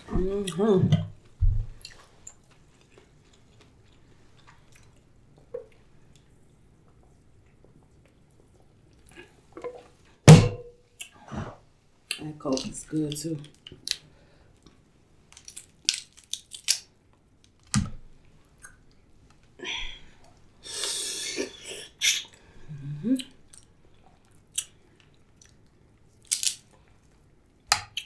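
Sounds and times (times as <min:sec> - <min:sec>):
crab shell cracking: 0:15.3 - 0:17.8, 0:26.2 - 0:26.7.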